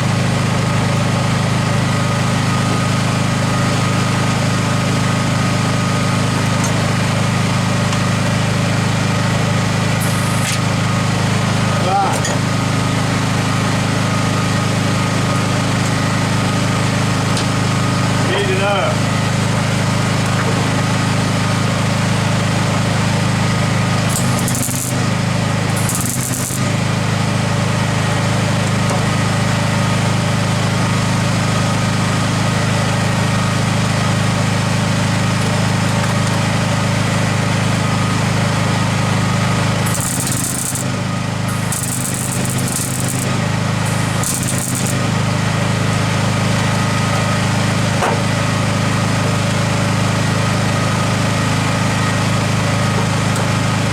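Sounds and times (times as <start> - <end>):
welder arc crackling: 10.0 - 10.6, 23.6 - 26.9, 39.5 - 45.4.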